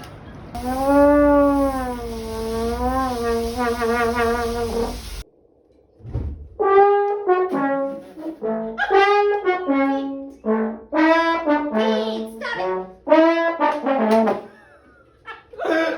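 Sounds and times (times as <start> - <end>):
trombone playing held notes: 0.6 - 5.2.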